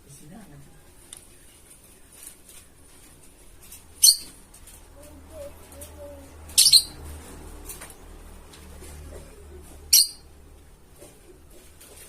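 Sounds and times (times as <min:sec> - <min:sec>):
lovebird chirping: 0:04.0 - 0:04.4, 0:06.5 - 0:07.0, 0:09.9 - 0:10.3.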